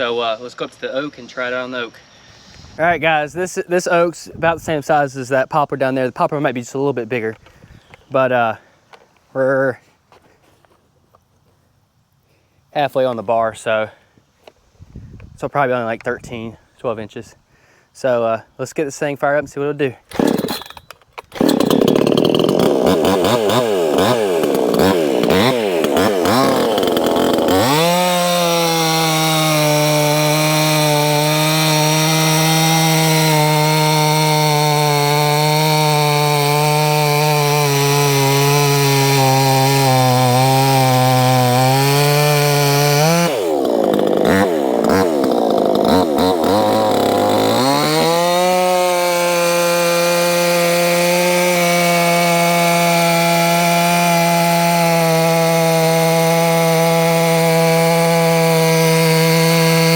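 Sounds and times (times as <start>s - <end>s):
chainsaw revving and cutting: 20.1s - 59.9s.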